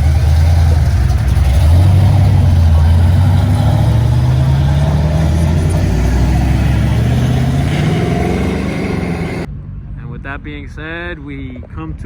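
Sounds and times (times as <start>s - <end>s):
car engine accelerating: 0.0s - 9.5s.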